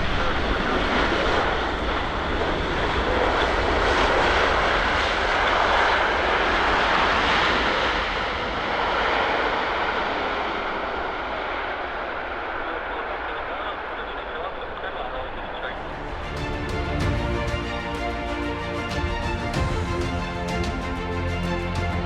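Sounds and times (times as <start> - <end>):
jet engine rushing: 0.0 - 22.0.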